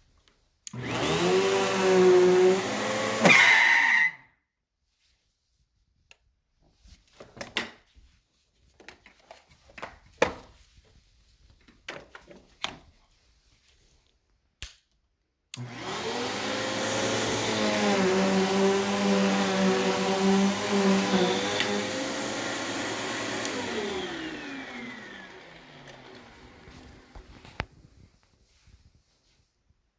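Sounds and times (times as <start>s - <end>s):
vacuum cleaner motor running: 0.7s - 4.1s, 15.6s - 27.7s.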